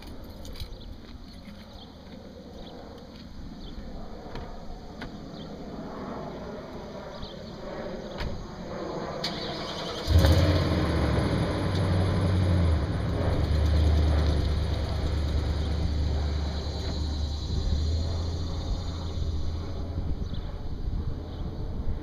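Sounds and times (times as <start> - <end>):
vehicle engine starting and idling: 9.2 - 19.9.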